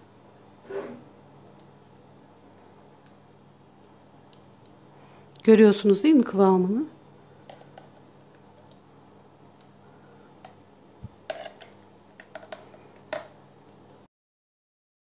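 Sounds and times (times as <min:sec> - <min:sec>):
low steady hum: 0:00.0 - 0:14.1
kitchen clicks and taps: 0:11.3 - 0:13.4.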